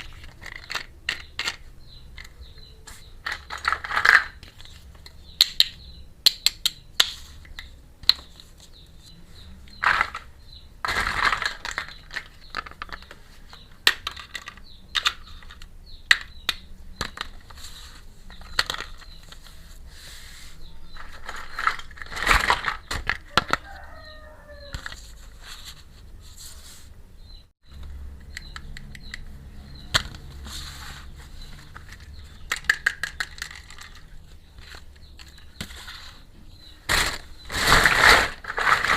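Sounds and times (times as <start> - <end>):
plastic toy pieces clicking and rattling: 0.0 - 2.5, 3.2 - 8.3, 9.8 - 17.6, 18.3 - 19.4, 21.0 - 23.6, 31.5 - 35.9.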